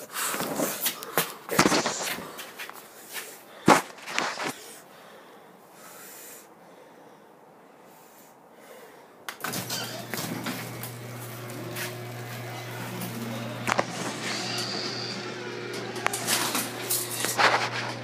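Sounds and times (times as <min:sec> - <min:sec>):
garage door opener motor humming: 0:09.4 - 0:18.0.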